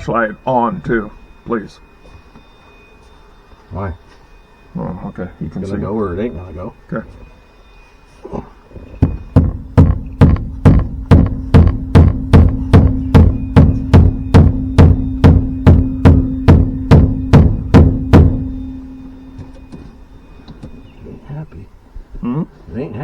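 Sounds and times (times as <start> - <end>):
low hum: 0.0 - 22.6
hammer striking metal: 9.0 - 20.9.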